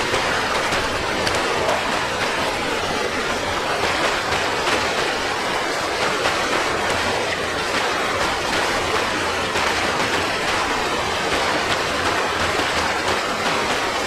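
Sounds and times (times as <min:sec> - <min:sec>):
faint clicks and splashes: 0:00.0 - 0:14.0
floodwater rushing: 0:00.0 - 0:14.0.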